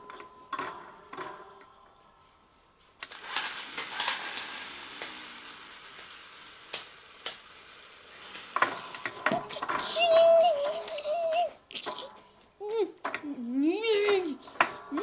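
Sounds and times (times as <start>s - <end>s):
frying sizzle with pops: 3.4s - 9.5s.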